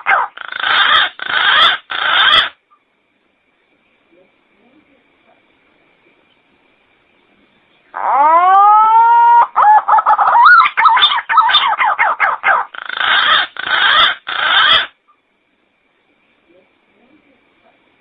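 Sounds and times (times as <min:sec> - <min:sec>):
pigeon call: 0:00.0 - 0:02.6, 0:08.0 - 0:15.0.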